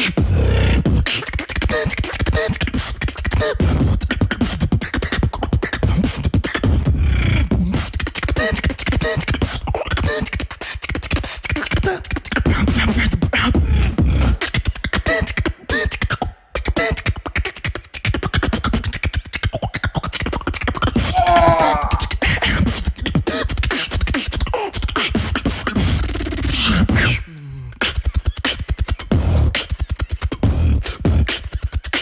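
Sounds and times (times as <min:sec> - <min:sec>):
beatboxing: 0:00.0 - 0:32.0.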